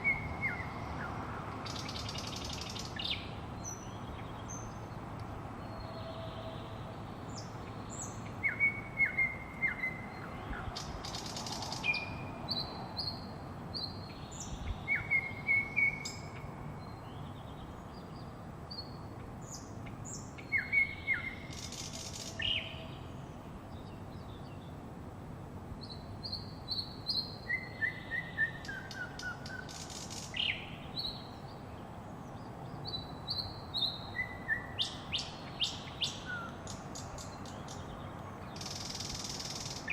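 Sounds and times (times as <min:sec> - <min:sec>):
songbirds chirping and singing: 0:00.0 - 0:24.8, 0:25.8 - 0:39.9
steady background noise: 0:00.0 - 0:39.9
harsh rasping bird calls: 0:33.4 - 0:39.9.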